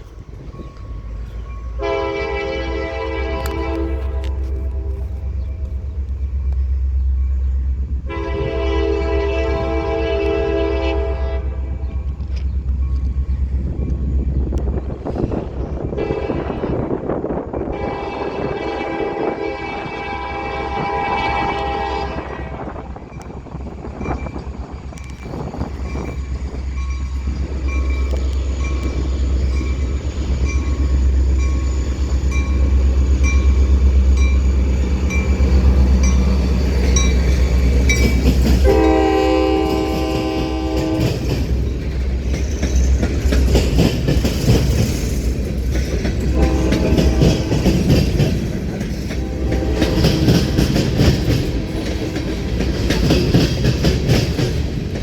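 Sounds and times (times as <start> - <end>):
diesel locomotive engine rumble: 0.0 - 55.0
train horn blast: 1.8 - 5.6, 8.1 - 12.2, 15.9 - 17.0, 17.6 - 23.0, 38.6 - 41.4, 46.3 - 48.1, 49.1 - 52.8
train cars clattering over rail joints: 34.4 - 55.0.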